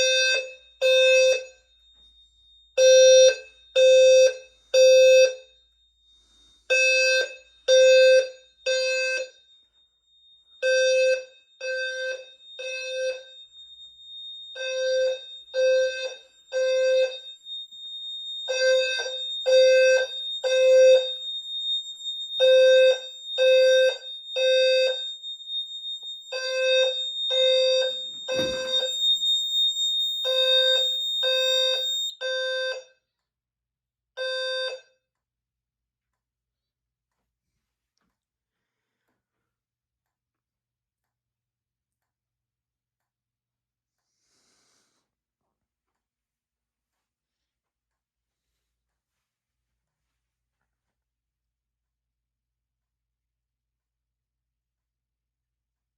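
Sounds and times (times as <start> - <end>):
fire alarm horn blasts: 0.0 - 33.1, 34.2 - 35.1
knock: 28.3 - 28.8.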